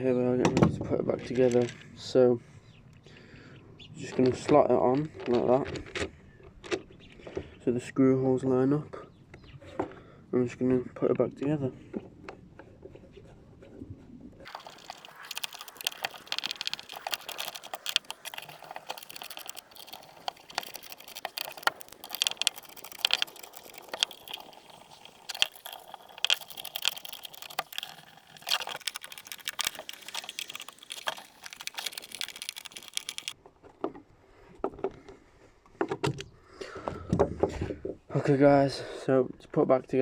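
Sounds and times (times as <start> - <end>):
plastic and metal parts clattering: 14.5 - 33.4.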